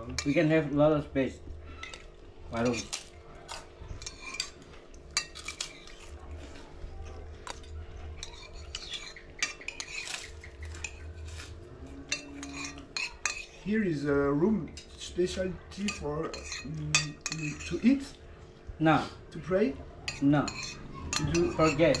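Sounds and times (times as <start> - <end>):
cutlery clinking on plates: 1.8 - 6.6, 7.4 - 13.6, 15.8 - 17.9, 20.1 - 22.0.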